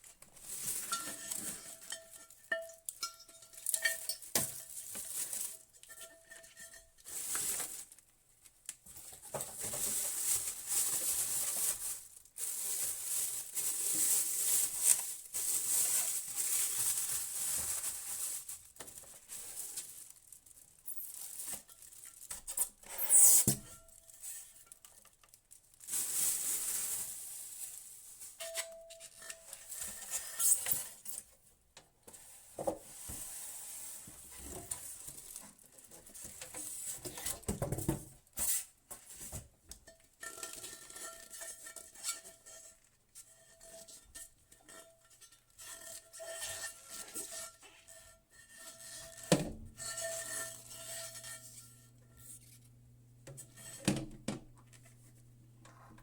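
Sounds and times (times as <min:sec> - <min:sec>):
knocks and clatters of handled parts: 0:00.1 - 0:07.9, 0:34.5 - 0:38.3.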